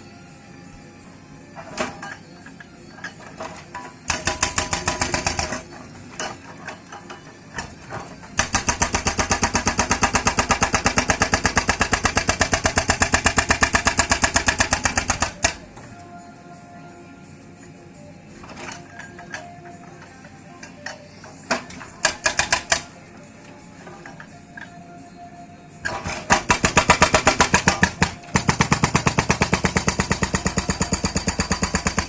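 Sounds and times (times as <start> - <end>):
hydraulic breaker hammer pounding: 4.0 - 5.7, 8.4 - 15.6, 21.6 - 22.9, 25.8 - 32.0.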